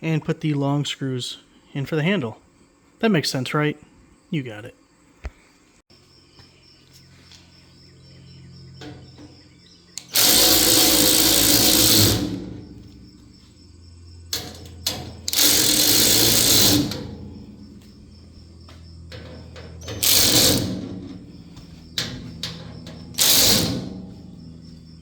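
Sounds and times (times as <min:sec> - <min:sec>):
power driver backing out bolts: 0:08.4 - 0:25.0
small clicks: 0:10.0 - 0:13.3, 0:14.3 - 0:18.0, 0:19.1 - 0:20.9, 0:21.6 - 0:24.1.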